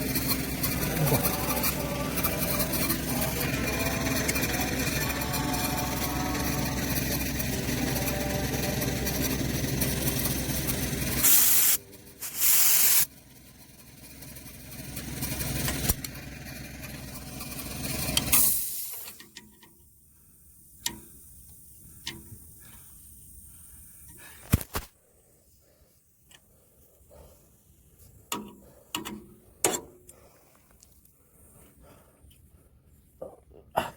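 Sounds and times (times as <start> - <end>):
compressed air hissing: 0.0 - 13.2, 18.3 - 19.2, 19.8 - 24.8
air compressor running: 0.0 - 19.2.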